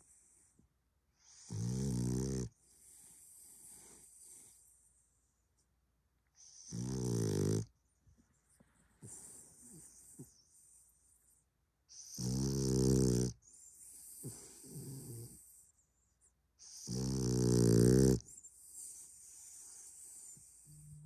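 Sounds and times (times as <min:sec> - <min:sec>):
dog snoring: 0:01.2 - 0:04.6, 0:06.4 - 0:07.8, 0:11.9 - 0:15.6, 0:16.6 - 0:21.0
dog wheezy breaths: 0:02.5 - 0:04.8, 0:08.4 - 0:11.0, 0:11.9 - 0:15.8, 0:16.6 - 0:21.0.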